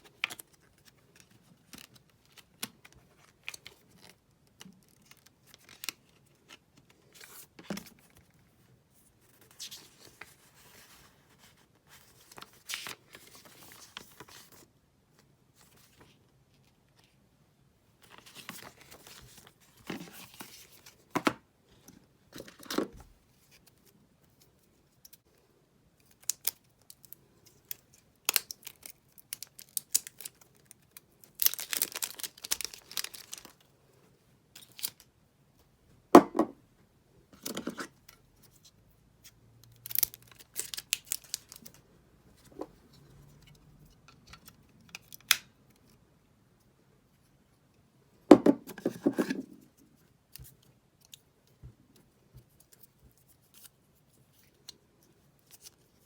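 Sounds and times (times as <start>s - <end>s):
wrapping crinkling: 26.2s - 33.7s, 39.8s - 41.8s
wrapping tearing: 31.2s - 33.6s
box knock: 36.2s - 36.6s.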